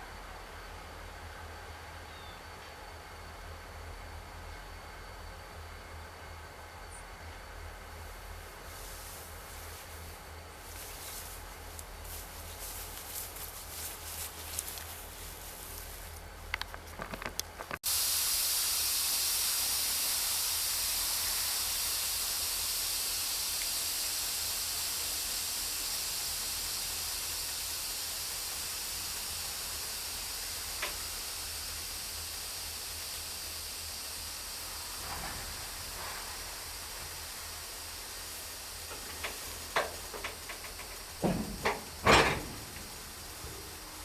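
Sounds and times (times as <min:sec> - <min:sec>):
compressed air hissing from brakes: 0:08.0 - 0:16.3, 0:17.8 - 0:44.0.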